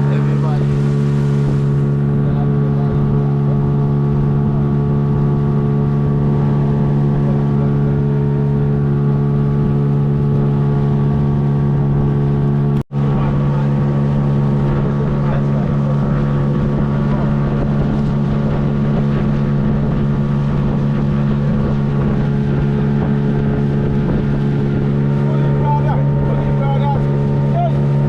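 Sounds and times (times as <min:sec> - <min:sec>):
motorboat engine droning: 0:00.0 - 0:28.0.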